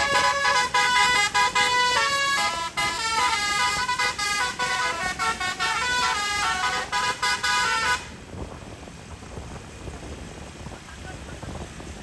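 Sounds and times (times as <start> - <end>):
musical air horns playing melody: 0.0 - 8.2.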